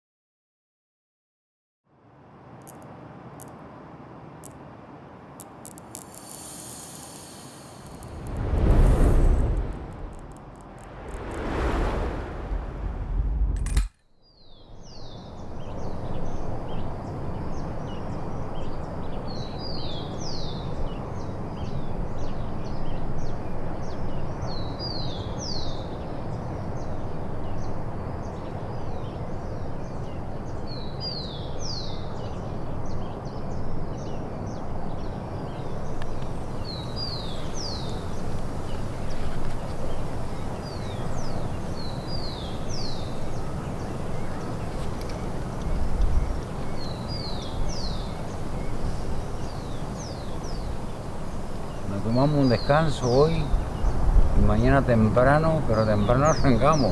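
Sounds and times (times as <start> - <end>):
rushing background noise: 2.1 - 13.9, 14.8 - 56.9
songbird singing high notes: 45.8 - 56.9.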